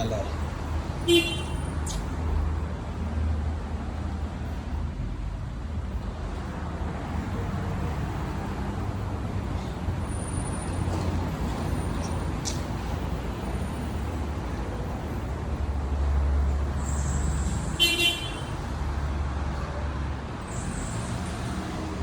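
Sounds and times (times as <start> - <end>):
motor vehicles rumbling: 0.0 - 22.0.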